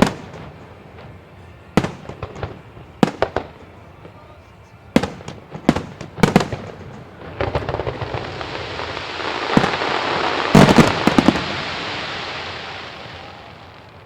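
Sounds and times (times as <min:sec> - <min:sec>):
fireworks crackling: 0:00.0 - 0:14.0
firework shells bursting: 0:05.0 - 0:13.9.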